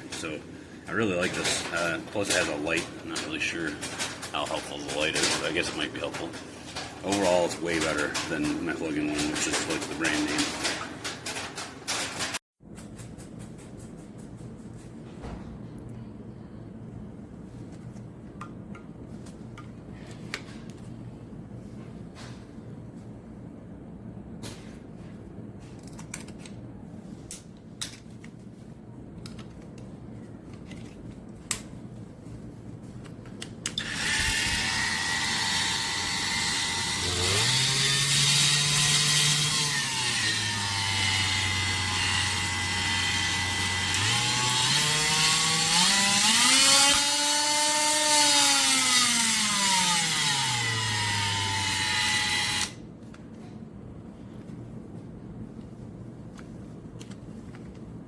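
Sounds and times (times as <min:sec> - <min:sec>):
oscillating tool motor whining: 0:33.8 - 0:52.7.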